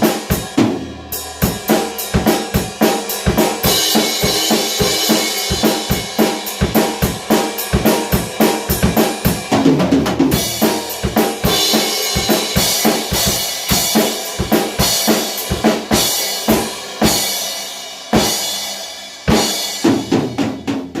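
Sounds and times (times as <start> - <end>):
snare and bass drum strokes: 0.0 - 21.0.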